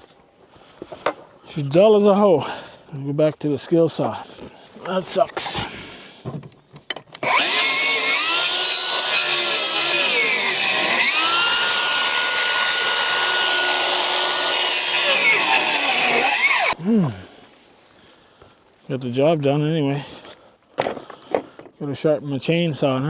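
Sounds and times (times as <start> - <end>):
circular saw cutting wood: 7.2 - 16.8.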